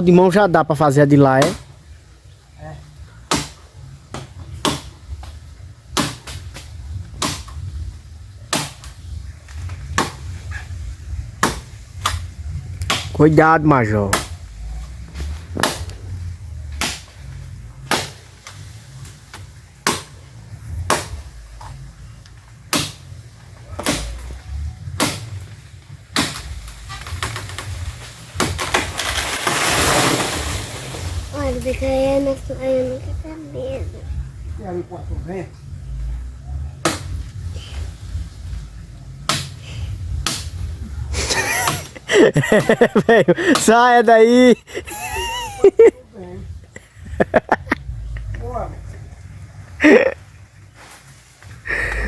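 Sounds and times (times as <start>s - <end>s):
axe chopping wood: 3.3s - 5.0s, 5.9s - 7.6s, 8.5s - 8.9s, 10.0s - 10.3s, 11.4s - 12.2s, 12.8s - 13.2s, 14.1s - 14.5s, 15.6s - 15.9s, 16.8s - 17.2s, 17.8s - 18.2s, 19.8s - 20.2s, 20.8s - 21.2s, 22.7s - 23.1s, 23.8s - 24.3s, 25.0s - 25.4s, 26.1s - 27.4s, 28.4s - 29.6s, 36.8s - 37.2s, 39.3s - 39.6s, 40.2s - 40.6s, 42.5s - 43.7s
steady low rumble: 5.0s - 28.4s, 30.4s - 43.7s, 44.5s - 52.0s.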